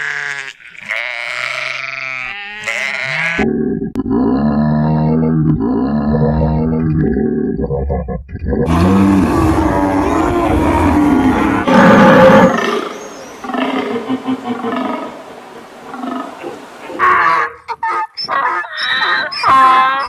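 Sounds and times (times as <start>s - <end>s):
animal calls: 8.7s - 20.0s.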